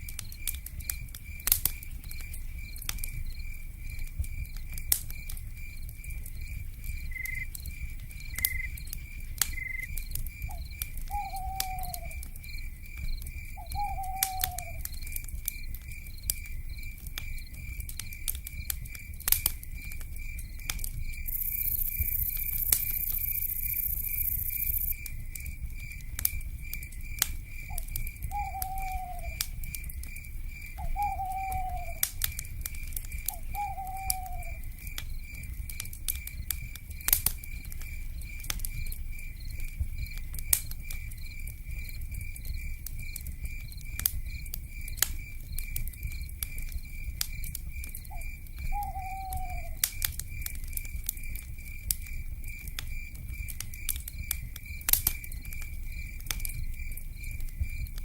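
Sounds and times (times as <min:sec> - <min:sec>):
wood fire crackling and popping: 0:00.0 - 0:58.0
owl hooting: 0:11.1 - 0:12.2, 0:13.6 - 0:14.8, 0:28.3 - 0:29.4, 0:30.8 - 0:32.0, 0:33.3 - 0:34.6, 0:48.7 - 0:49.8
pulsing insect trill: 0:21.2 - 0:25.0.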